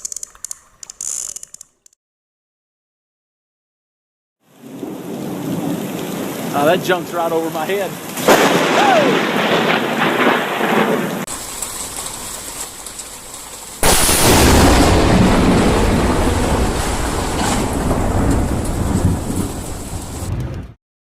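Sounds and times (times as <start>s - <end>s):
steady rain hiss: 4.5s - 20.3s
thunder rumbling: 4.6s - 20.8s.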